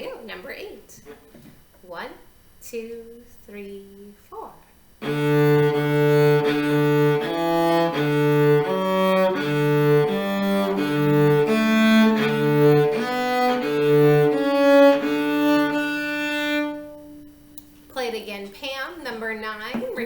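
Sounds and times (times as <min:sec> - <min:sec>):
solo cello bowing: 0:01.0 - 0:01.6, 0:05.0 - 0:17.6.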